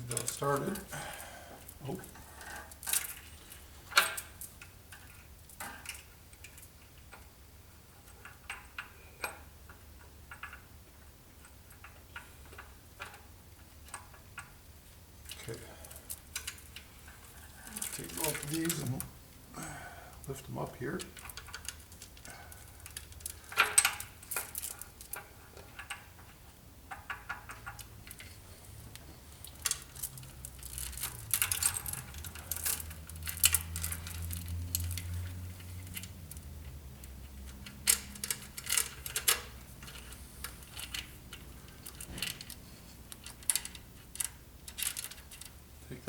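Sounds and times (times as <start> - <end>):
metal chains clinking and rattling: 15.3 - 19.0, 29.4 - 36.4, 37.5 - 45.5.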